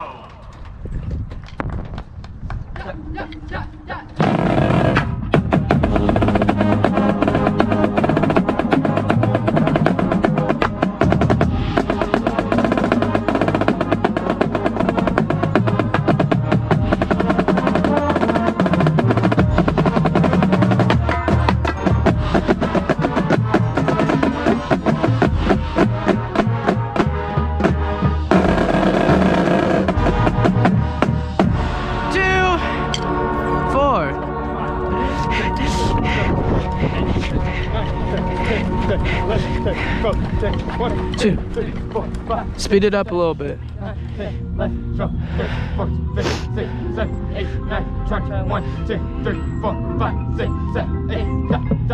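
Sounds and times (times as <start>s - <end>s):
marching snare drum rolls: 4.2s - 31.9s
bass drums: 4.2s - 33.1s.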